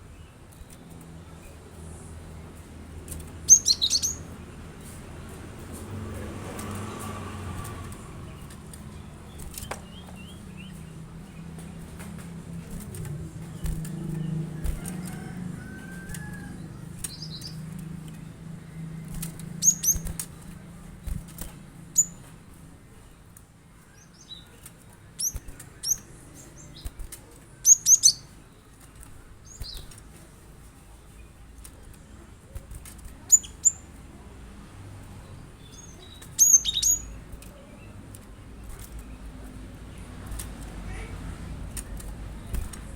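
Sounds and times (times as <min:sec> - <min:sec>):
bird chirping: 0:03.1 - 0:05.0, 0:06.6 - 0:23.2, 0:23.8 - 0:28.6, 0:33.1 - 0:34.0, 0:35.1 - 0:39.4.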